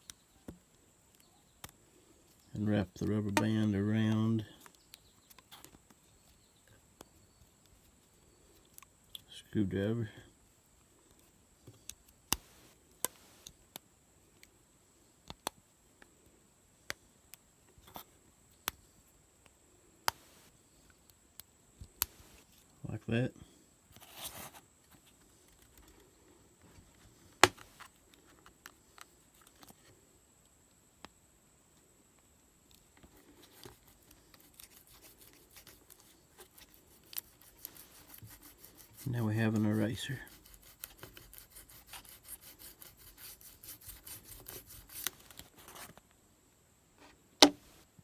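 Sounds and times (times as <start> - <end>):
handling rustle: 23.9 - 30.0, 32.8 - 46.1
rubber band rubbing on paper: 33.3 - 46.0.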